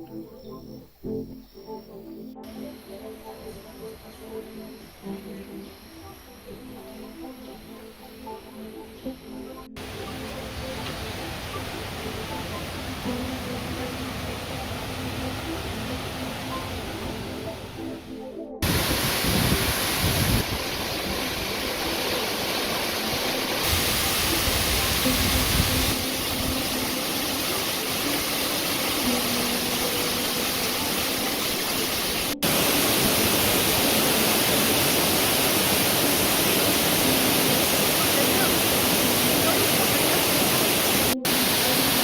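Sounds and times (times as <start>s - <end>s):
waterfall rushing: 9.8s - 42.0s.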